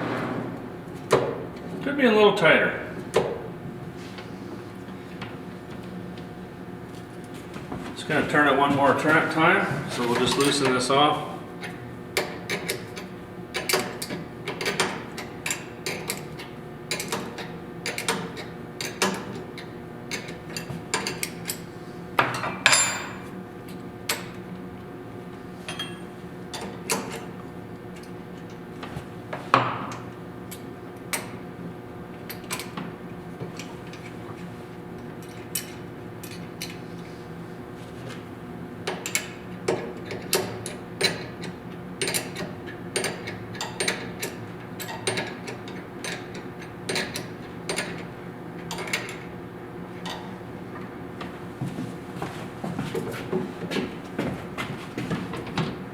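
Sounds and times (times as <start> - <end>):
metal scraping: 0.0 - 0.9
steady low hum: 0.0 - 42.6.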